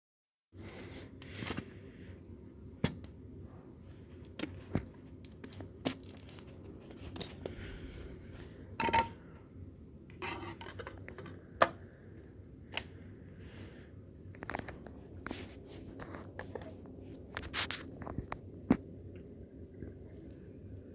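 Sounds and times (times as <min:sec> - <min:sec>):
low steady hum: 0:00.5 - 0:20.9.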